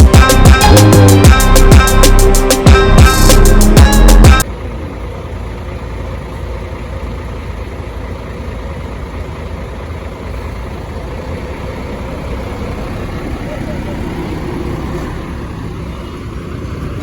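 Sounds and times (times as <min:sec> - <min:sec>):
loud music: 0:00.0 - 0:04.4
diesel bus engine idling: 0:00.0 - 0:17.0.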